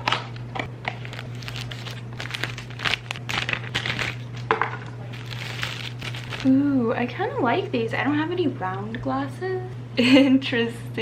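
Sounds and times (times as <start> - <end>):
steady low hum: 0.0 - 11.0
packaging crinkling: 0.8 - 6.5.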